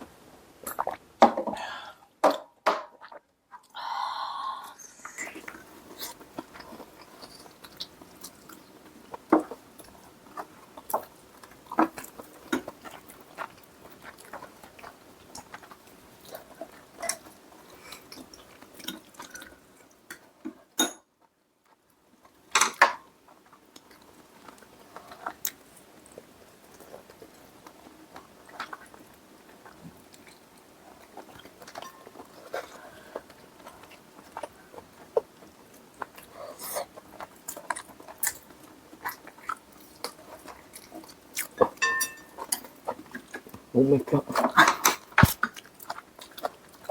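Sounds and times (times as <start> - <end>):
chewing: 5.1 - 20.4, 23.2 - 46.9
utensils clinking against bowls: 41.6 - 42.7.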